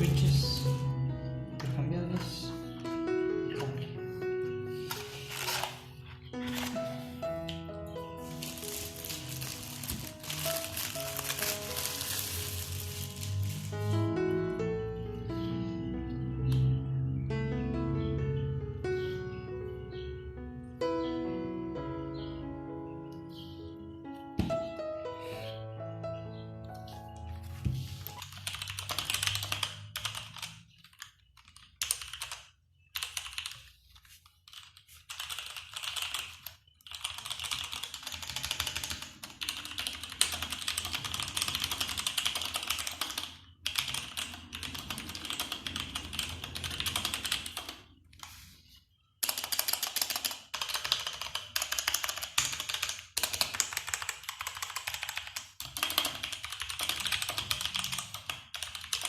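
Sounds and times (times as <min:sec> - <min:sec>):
mechanical keyboard typing: 0:08.3 - 0:13.9, 0:28.0 - 0:33.7, 0:34.4 - 0:47.9, 0:49.2 - 0:59.0.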